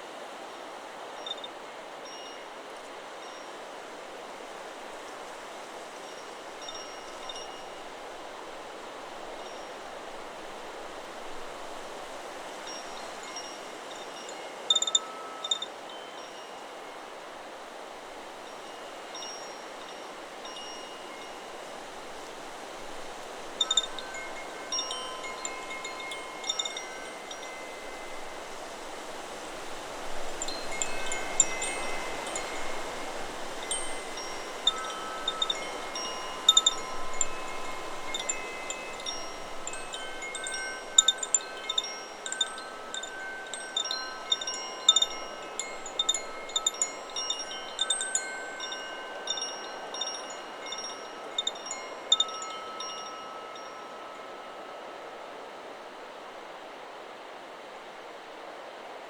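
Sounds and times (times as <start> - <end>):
wind chime ringing: 12.4 - 17.2, 18.5 - 55.1.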